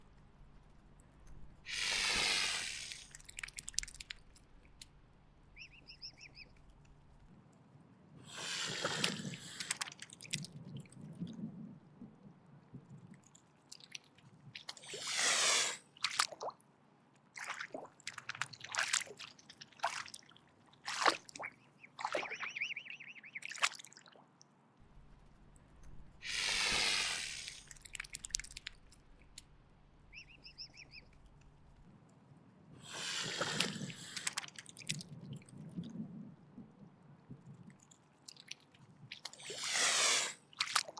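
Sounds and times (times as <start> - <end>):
swan hissing: 1.7 - 3.2, 8.3 - 9.8, 14.8 - 15.8, 26.2 - 28.9, 32.8 - 34.4, 39.4 - 40.5.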